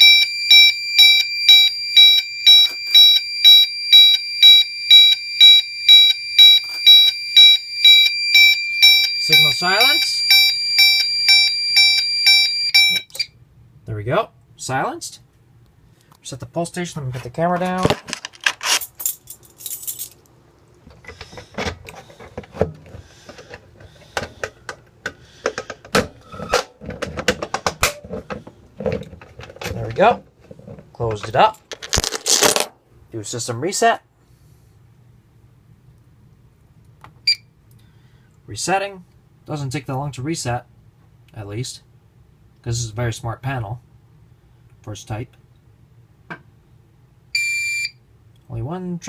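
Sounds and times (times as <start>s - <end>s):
electronic fire alarm chime: 0.0s - 13.3s, 47.4s - 48.0s
clicks and rattles of alarm box: 21.0s - 30.0s.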